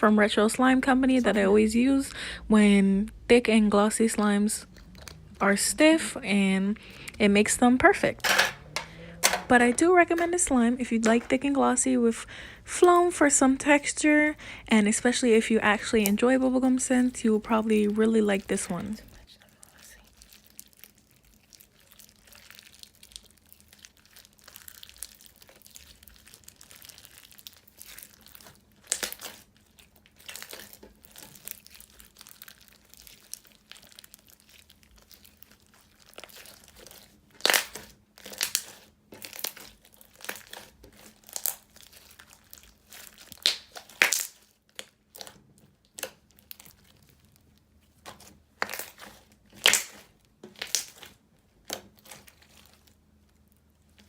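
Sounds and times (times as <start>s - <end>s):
sticky crackles and pops: 15.8s - 54.0s
slime squished by hand: 20.0s - 54.0s.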